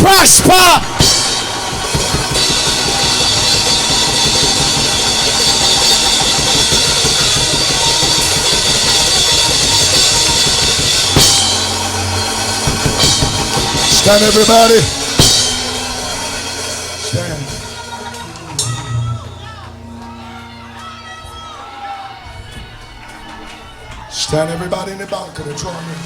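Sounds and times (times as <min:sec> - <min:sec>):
live band playing loud music: 0:00.0 - 0:21.0
cymbal crash: 0:00.8 - 0:19.2.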